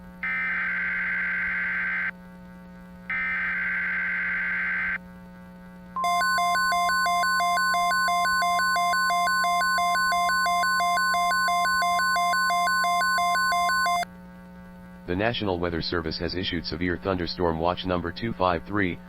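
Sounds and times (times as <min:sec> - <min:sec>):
alert tone with beeping: 0:06.0 - 0:14.0.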